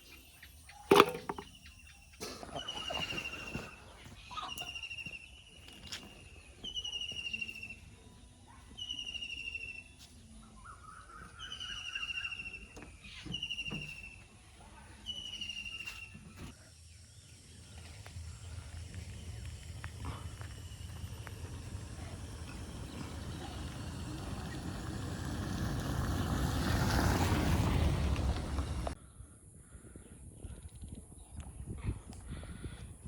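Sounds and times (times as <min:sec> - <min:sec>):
low rumble: 0:17.1 - 0:26.5.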